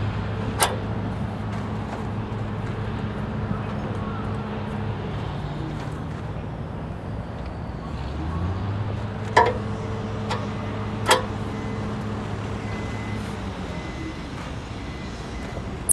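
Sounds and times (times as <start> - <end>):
skid steer engine running: 0.0 - 15.9
sharp metallic clanks: 9.4 - 9.7.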